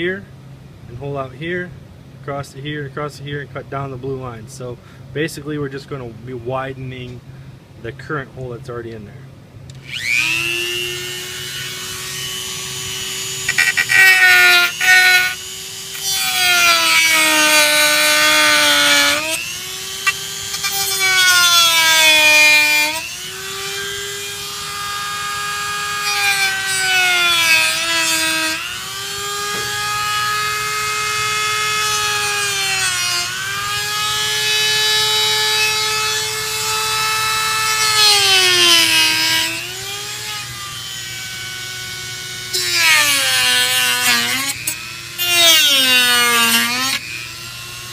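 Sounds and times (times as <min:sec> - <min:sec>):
rotary tool whining: 0:09.7 - 0:47.9.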